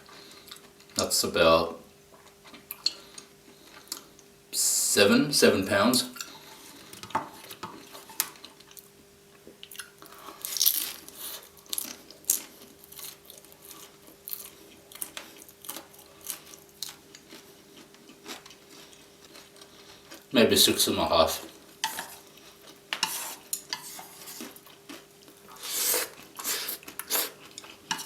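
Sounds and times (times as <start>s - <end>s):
faint steady hum: 0.0s - 28.0s
chewing crunchy noodles: 9.6s - 20.3s, 21.4s - 28.0s.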